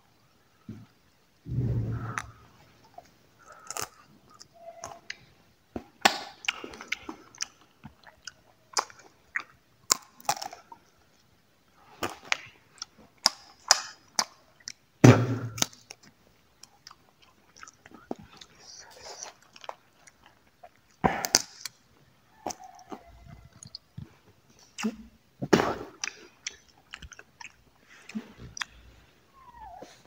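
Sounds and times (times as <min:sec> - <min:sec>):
loud low muffled burst: 0:01.5 - 0:02.5
chewing crunchy dry fruit: 0:02.1 - 0:05.3, 0:06.0 - 0:14.8, 0:15.6 - 0:25.1, 0:25.8 - 0:28.8.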